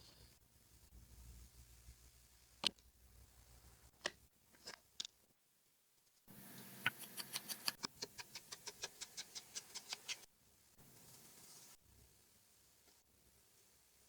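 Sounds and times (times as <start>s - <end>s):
small clicks of craft tools: 6.8s - 10.3s.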